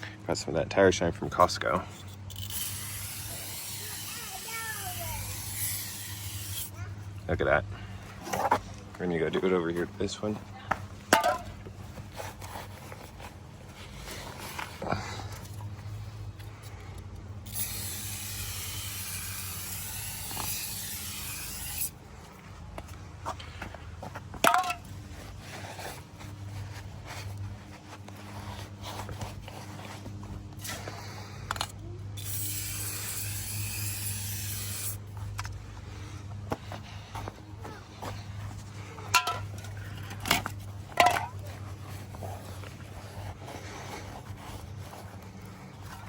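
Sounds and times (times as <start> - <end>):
steady low hum: 0.0 - 46.0
aerosol can spraying: 2.4 - 6.7, 17.5 - 21.9, 32.2 - 35.0.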